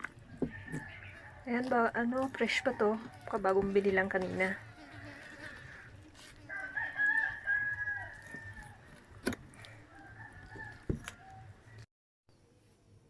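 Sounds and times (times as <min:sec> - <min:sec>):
rooster crowing: 0:00.3 - 0:01.5, 0:02.3 - 0:03.4, 0:04.6 - 0:09.0, 0:09.7 - 0:11.8.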